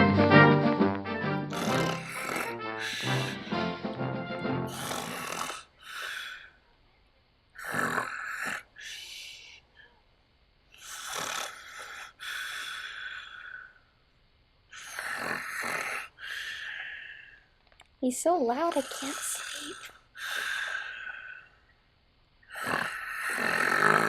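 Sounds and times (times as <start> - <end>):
man snoring: 0.9 - 4.0, 4.6 - 6.5, 7.6 - 8.8, 10.8 - 13.7, 14.7 - 17.3, 18.7 - 21.5, 22.5 - 24.0.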